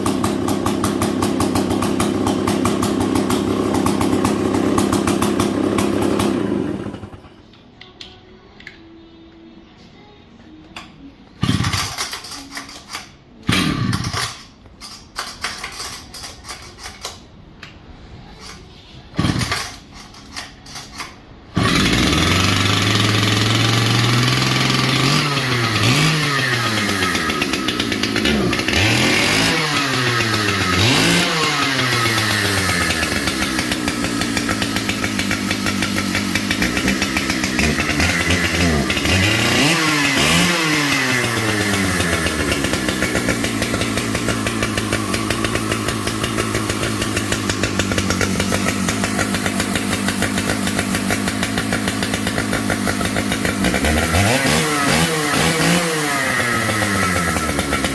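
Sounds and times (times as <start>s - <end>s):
chainsaw revving: 0.0s - 7.3s, 11.4s - 12.2s, 13.5s - 14.5s, 19.2s - 19.8s, 21.5s - 57.9s
chainsaw engine coughing: 13.5s - 14.3s, 21.6s - 57.9s.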